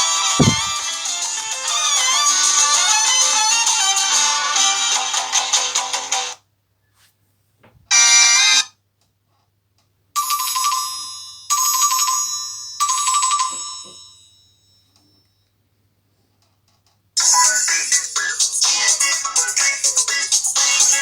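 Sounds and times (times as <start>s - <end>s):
phone ringtone melody: 0.4s - 0.8s.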